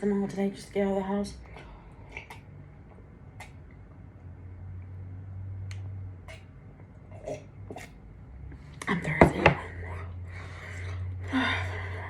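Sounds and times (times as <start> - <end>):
low hum: 0.0 - 12.0
chewing and lip-smacking: 2.0 - 3.8, 5.7 - 8.0.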